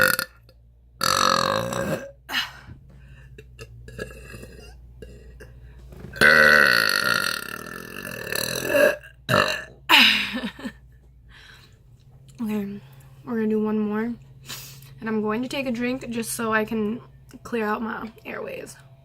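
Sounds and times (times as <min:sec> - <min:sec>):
woman burping: 0:00.0 - 0:00.4, 0:01.0 - 0:02.7, 0:03.4 - 0:05.5, 0:06.2 - 0:10.8.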